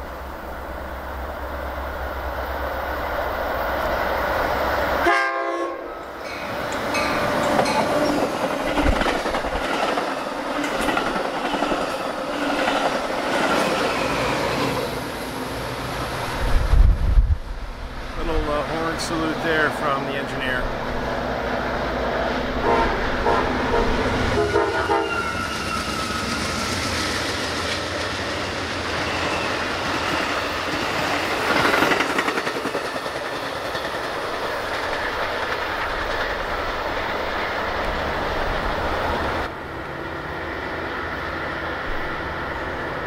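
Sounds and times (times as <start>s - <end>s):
train wheels rumbling on rails: 0.0s - 43.0s
train horn blasts: 5.0s - 6.1s, 22.6s - 25.8s.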